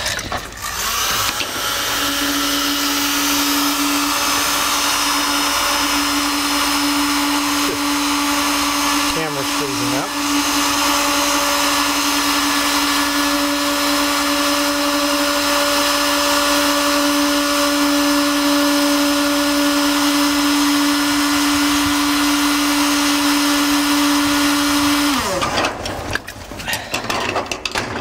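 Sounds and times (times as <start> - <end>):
electric blower humming and hissing: 0.6 - 26.2.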